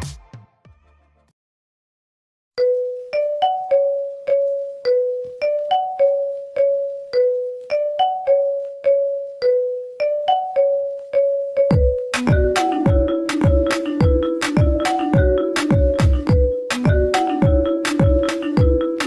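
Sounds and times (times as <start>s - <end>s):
phone ringtone melody: 2.6s - 19.0s.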